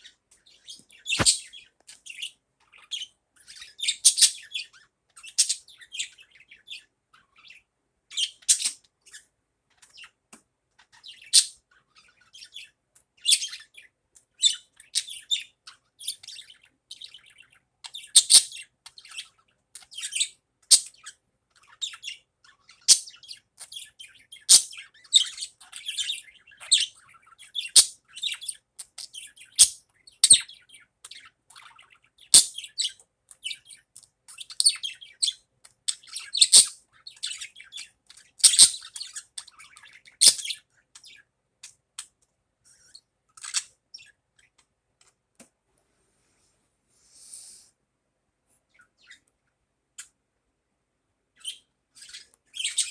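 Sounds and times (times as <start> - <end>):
budgerigar chirping: 0.4 - 9.2, 11.0 - 21.2, 21.8 - 41.2, 51.4 - 52.9.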